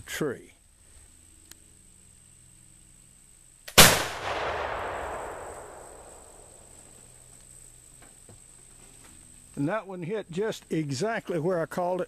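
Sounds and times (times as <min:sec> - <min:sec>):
rifle shot with rolling echo: 0:03.7 - 0:07.0.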